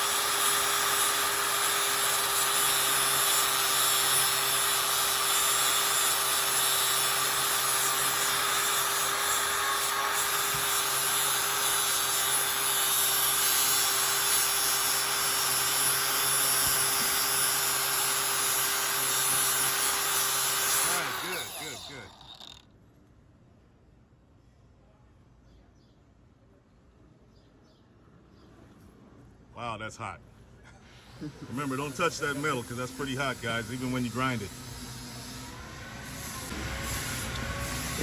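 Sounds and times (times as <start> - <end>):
angle grinder grinding steel: 0.0 - 22.6, 31.2 - 38.0.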